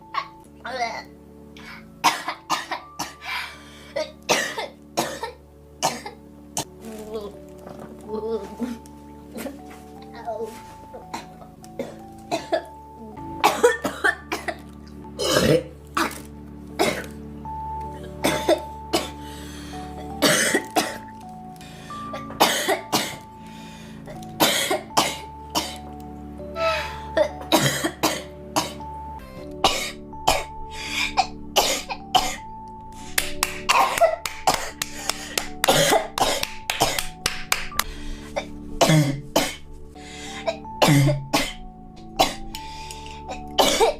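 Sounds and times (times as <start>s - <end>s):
girl coughing: 2.1s - 3.1s, 4.0s - 6.2s, 13.4s - 14.6s, 15.2s - 16.2s, 18.2s - 19.1s, 20.2s - 21.0s, 22.2s - 23.2s, 24.4s - 25.8s, 26.6s - 28.8s, 29.6s - 32.4s, 33.7s - 34.7s, 35.7s - 37.0s, 38.4s - 39.6s, 40.4s - 41.6s, 42.2s - 42.4s, 43.3s - 43.9s.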